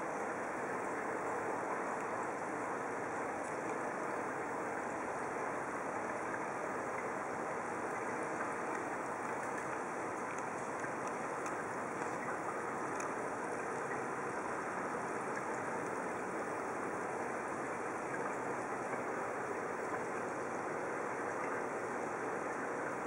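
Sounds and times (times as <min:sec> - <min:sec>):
faint clicks: 0:08.3 - 0:14.0.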